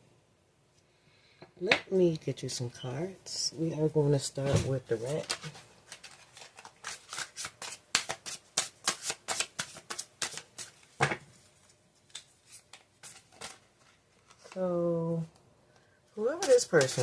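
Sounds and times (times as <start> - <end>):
cards being shuffled: 4.7 - 15.3, 16.2 - 17.0.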